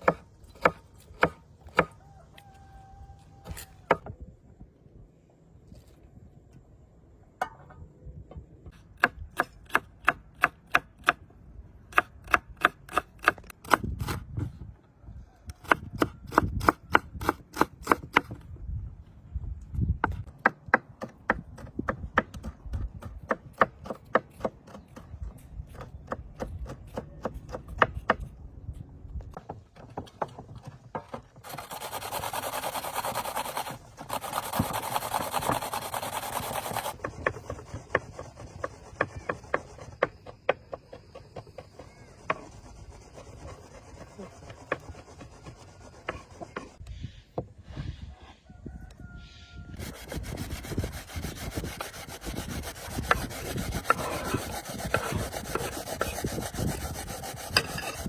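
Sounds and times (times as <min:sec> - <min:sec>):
rubbing and scraping on wood: 0:29.3 - 0:46.8, 0:49.8 - 0:58.0.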